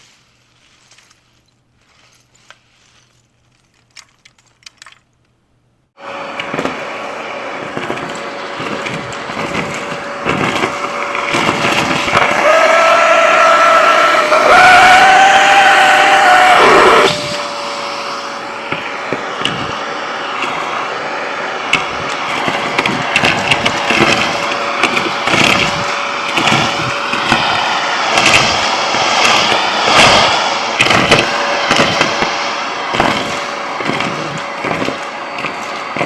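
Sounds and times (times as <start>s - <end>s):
clicks and rattles: 3.2s - 5.4s, 21.7s - 30.2s
vacuum cleaner running: 6.0s - 36.0s.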